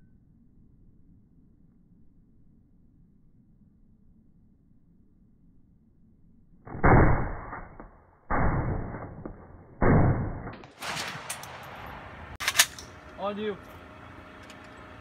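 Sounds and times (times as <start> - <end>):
muffled gunshots: 6.8 - 11.7.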